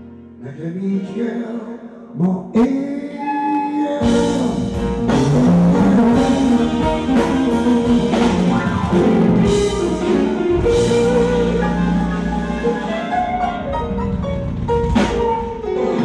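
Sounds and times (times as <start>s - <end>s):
electric guitar: 3.2s - 16.0s
drum kit hits: 4.0s - 16.0s
sustained bass notes: 4.0s - 16.0s.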